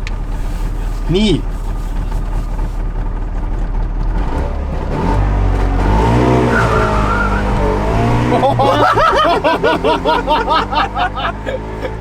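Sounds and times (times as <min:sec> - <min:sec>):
tyres skidding and squealing: 0:00.0 - 0:03.0, 0:04.8 - 0:12.0
car engine revving hard: 0:04.0 - 0:12.0.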